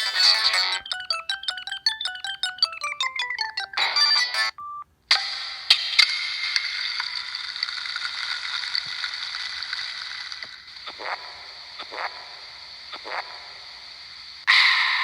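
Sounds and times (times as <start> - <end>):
cluster of phone tones: 0.0 - 4.8
hissing crackly ringtone: 0.0 - 4.8.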